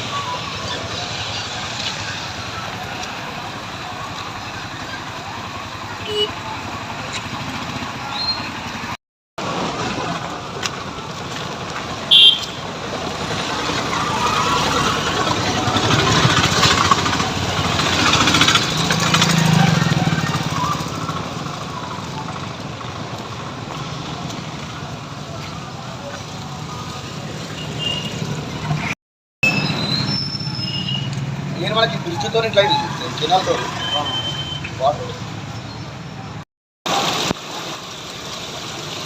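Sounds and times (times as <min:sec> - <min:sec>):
short high horn beep: 0:12.1 - 0:12.6
motor vehicle passing: 0:12.9 - 0:29.0.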